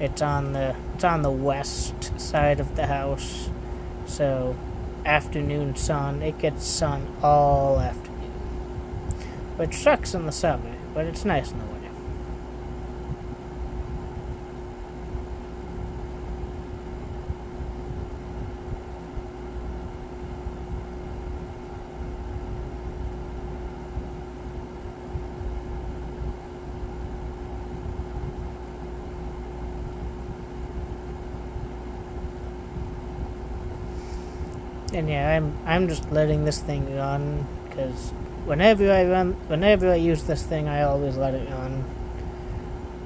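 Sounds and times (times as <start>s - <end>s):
air conditioner fan rushing: 0.0s - 43.0s
constant hum: 0.0s - 43.0s.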